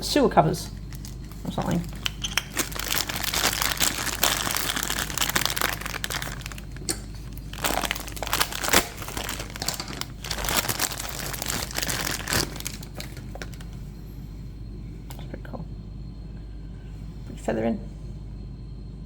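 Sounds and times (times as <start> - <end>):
packaging crinkling and rustling: 0.8 - 13.8.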